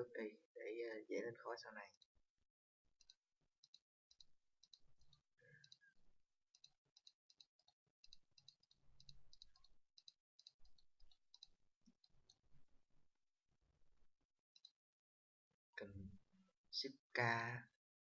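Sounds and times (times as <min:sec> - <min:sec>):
faint computer mouse clicks: 0:06.6 - 0:12.4, 0:14.6 - 0:14.8.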